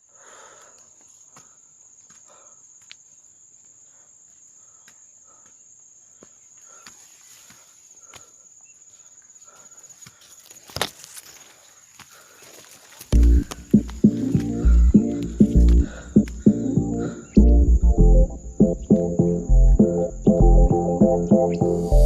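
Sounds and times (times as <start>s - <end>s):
insects droning: 0.0s - 22.0s
footsteps walking: 10.0s - 17.6s.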